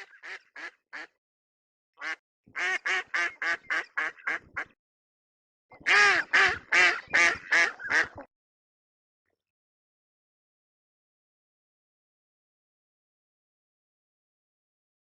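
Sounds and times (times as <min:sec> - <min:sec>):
duck quacking: 0:00.0 - 0:01.2, 0:02.0 - 0:04.8, 0:05.8 - 0:08.3.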